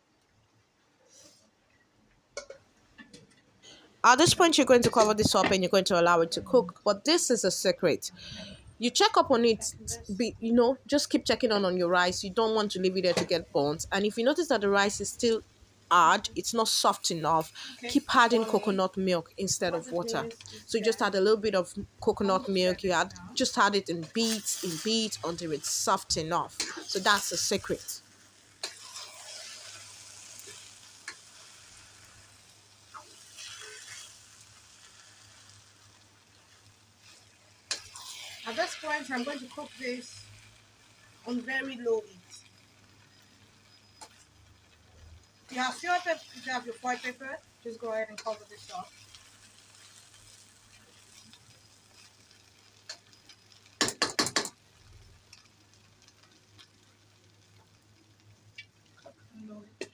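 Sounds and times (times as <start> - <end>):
pot sizzling: 1.1 - 1.5, 2.4 - 59.9
aluminium foil crinkling: 28.6 - 58.2.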